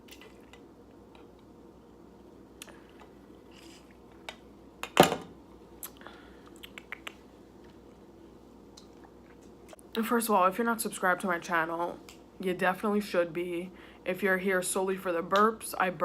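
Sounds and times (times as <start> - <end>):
chewing clicks and crunches: 5.8 - 7.2.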